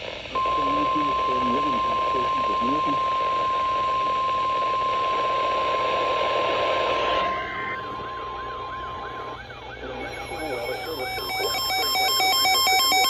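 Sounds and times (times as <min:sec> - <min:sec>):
radio static: 0:00.0 - 0:13.0
high piercing alarm tone: 0:00.3 - 0:13.0
siren-like wail: 0:06.5 - 0:13.0.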